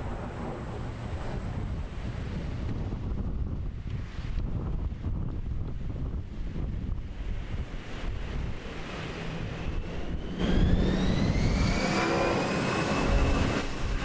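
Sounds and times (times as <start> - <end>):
wind rumbling on microphone: 0.0 - 14.0
motor whine rising in pitch: 9.0 - 14.0.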